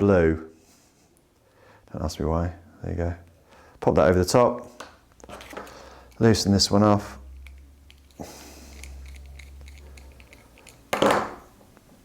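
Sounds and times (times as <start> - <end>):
small metal parts clicking: 7.4 - 11.0.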